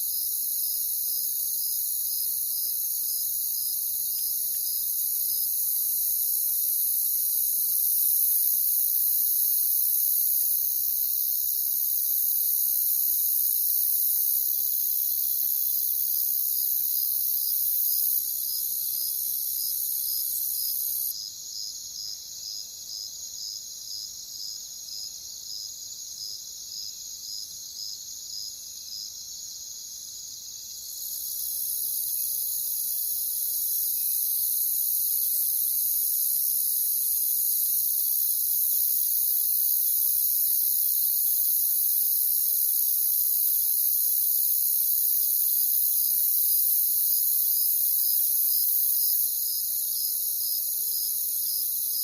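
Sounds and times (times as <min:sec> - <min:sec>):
single cricket chirping: 0:00.0 - 0:52.0
crickets trilling: 0:30.8 - 0:52.0.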